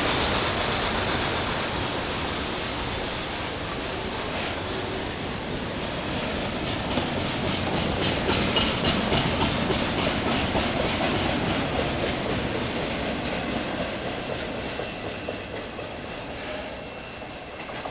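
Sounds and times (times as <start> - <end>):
train wheels clacking on rails: 0.0 - 17.9.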